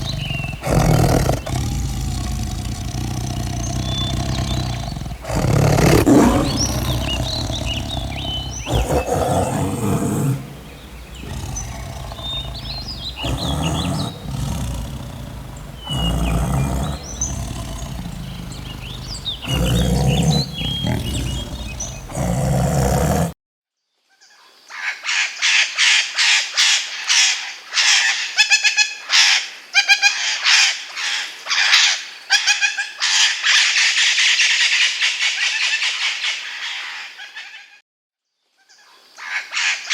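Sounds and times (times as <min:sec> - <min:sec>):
birds chirping: 0:00.0 - 0:23.3
repeated bird calls: 0:00.0 - 0:23.3
animal sounds: 0:00.0 - 0:23.4.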